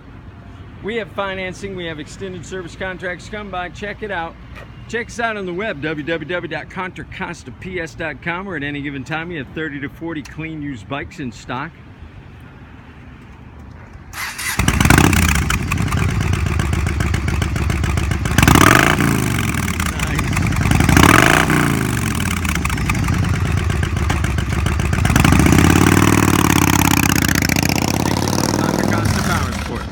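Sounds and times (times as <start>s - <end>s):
motorcycle engine starting and revving: 14.1s - 29.9s.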